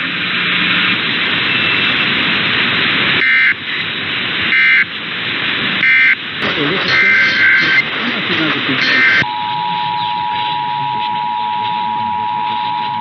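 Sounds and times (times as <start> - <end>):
radio static hiss: 3.1 - 13.0
digital data tones: 3.2 - 3.6, 4.6 - 4.9, 5.8 - 13.0.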